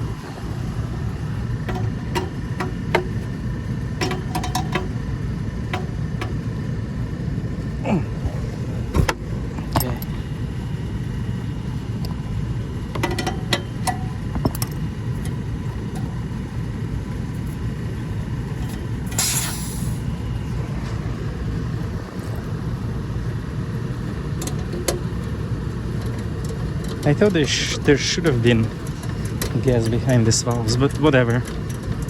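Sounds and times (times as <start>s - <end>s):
low rumble: 0.0s - 24.4s
wrench clinking on valve fittings: 1.6s - 3.3s, 4.0s - 5.0s, 5.7s - 6.4s, 12.9s - 16.2s
short hiss: 19.1s - 20.0s.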